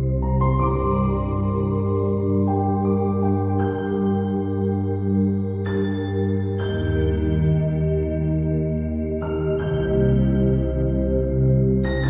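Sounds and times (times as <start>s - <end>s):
ambient music with pads and bells: 0.0s - 12.0s.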